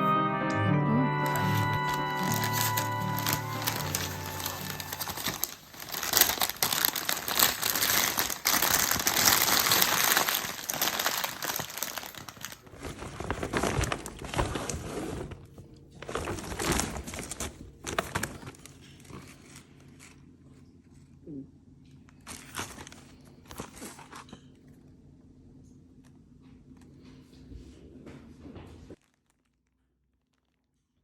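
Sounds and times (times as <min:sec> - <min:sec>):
plastic packaging crinkling: 0:01.1 - 0:20.2, 0:22.1 - 0:24.5, 0:29.0 - 0:31.0.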